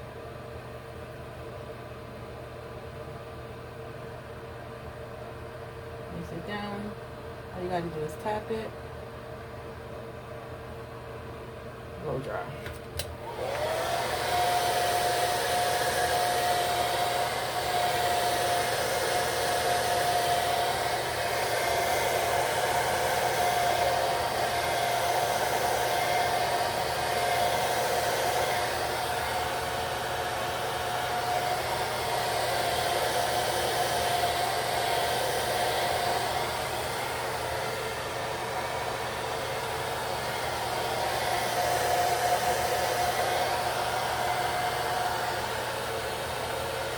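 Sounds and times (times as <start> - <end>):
hair dryer blowing: 6.2 - 8.7, 12.0 - 46.9.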